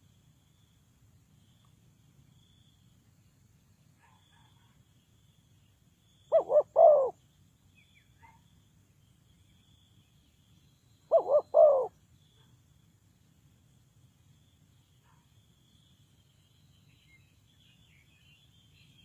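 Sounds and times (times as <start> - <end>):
dove cooing: 6.3 - 7.2, 11.1 - 12.0.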